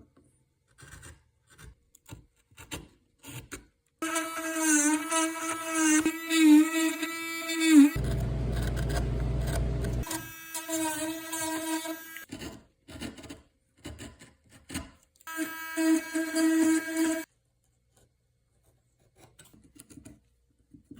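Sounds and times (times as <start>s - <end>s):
rotary tool grinding wood: 4.0s - 12.5s, 15.3s - 17.3s.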